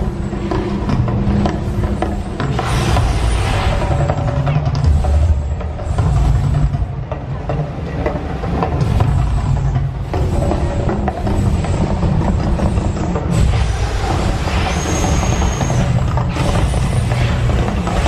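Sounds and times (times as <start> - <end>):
deep loud rumbling: 0.0 - 18.0
hissing rush: 8.8 - 18.0.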